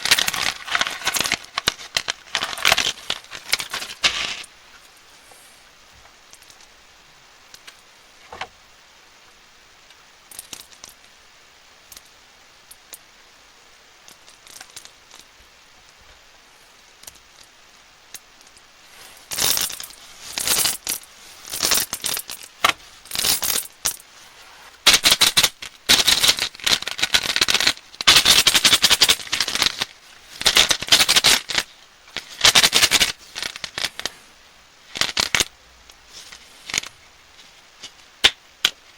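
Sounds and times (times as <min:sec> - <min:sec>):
candy wrappers crinkling: 0:00.0 - 0:04.5, 0:19.0 - 0:24.2, 0:24.8 - 0:34.2.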